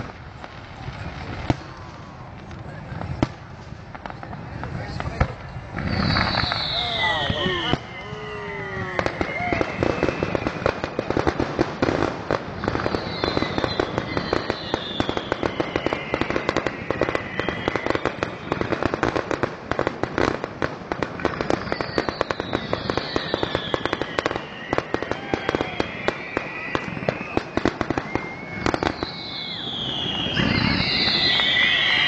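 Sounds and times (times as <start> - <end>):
descending firework whistle: 0.0 - 32.0
fireworks crackling and popping: 0.0 - 32.0.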